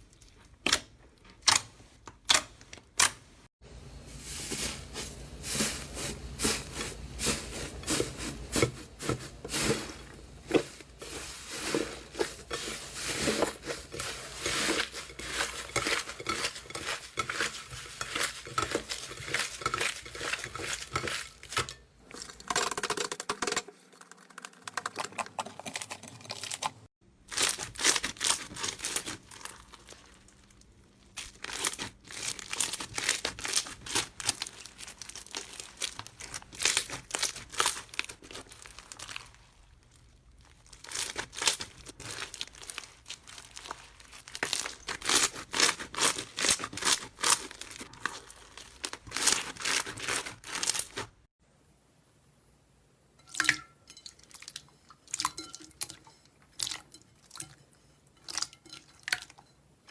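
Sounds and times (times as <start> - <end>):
slime crackling and popping: 27.3 - 51.1.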